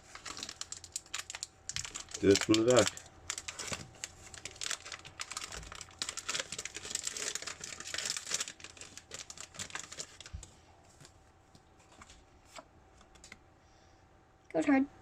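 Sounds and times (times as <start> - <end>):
foil wrapper tearing and crinkling: 0.0 - 10.4.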